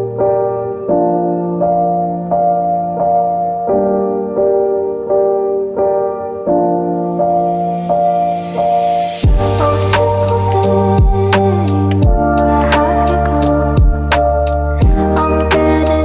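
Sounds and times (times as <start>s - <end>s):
gentle keyboard melody: 0.0s - 16.0s.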